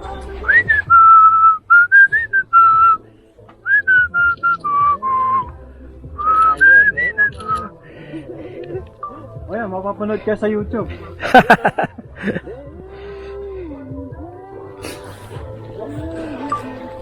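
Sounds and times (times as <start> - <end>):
person whistling a tune: 0.4 - 3.0, 3.6 - 5.6, 6.2 - 7.7.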